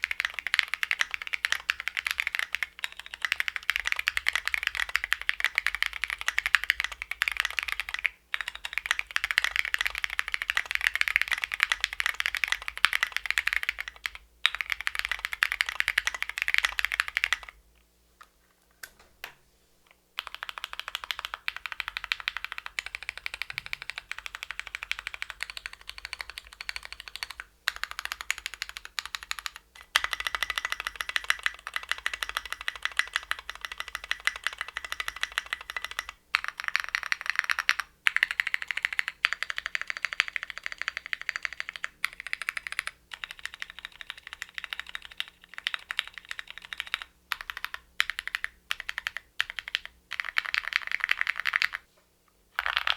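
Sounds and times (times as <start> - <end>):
fast mechanical keyboard typing: 0.0 - 17.6, 20.2 - 51.8, 52.6 - 52.9.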